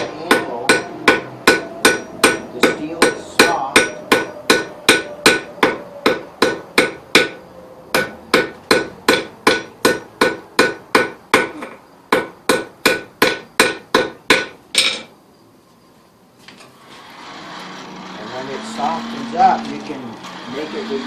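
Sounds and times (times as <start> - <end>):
hammer ringing on anvil: 0.2 - 7.4.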